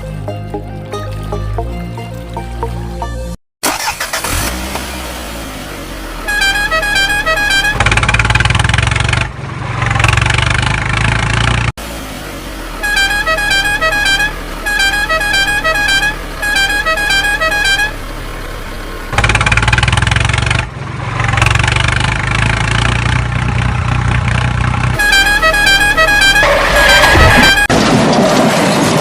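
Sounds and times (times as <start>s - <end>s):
engine running rumble: 0.0s - 29.0s
musical vehicle horn tune: 6.2s - 7.8s, 12.8s - 18.2s, 24.9s - 27.7s.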